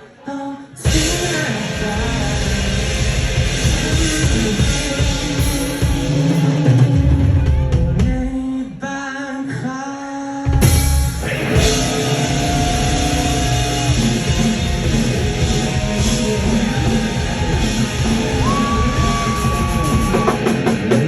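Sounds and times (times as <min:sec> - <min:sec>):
rock song with drums and guitar: 0:00.9 - 0:08.8, 0:10.4 - 0:21.0.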